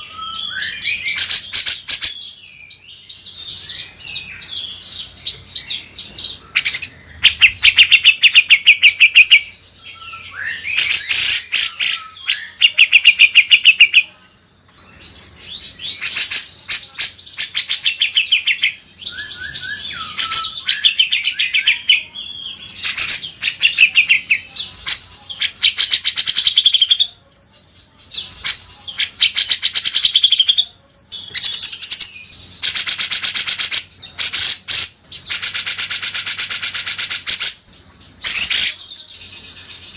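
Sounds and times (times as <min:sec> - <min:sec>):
bird whistled phrases: 0:00.0 - 0:02.5, 0:06.5 - 0:14.0, 0:17.4 - 0:27.3
bird chattering trills: 0:31.3 - 0:39.9.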